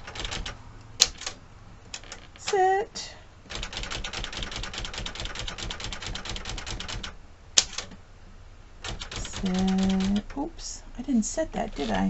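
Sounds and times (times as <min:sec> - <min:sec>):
typewriter sharp clack: 0:00.0 - 0:01.4, 0:03.5 - 0:08.0, 0:08.8 - 0:10.4
typewriter carriage clicking: 0:00.0 - 0:02.6, 0:03.5 - 0:08.0, 0:08.8 - 0:10.4.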